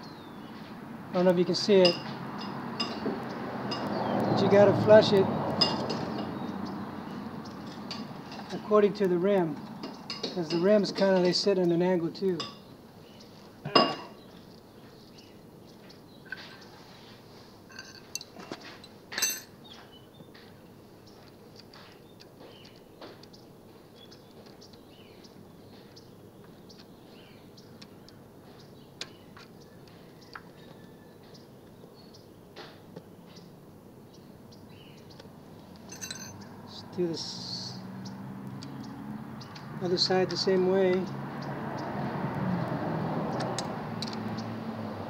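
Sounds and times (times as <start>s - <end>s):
metallic clicks of hand tools: 43.4s - 44.2s.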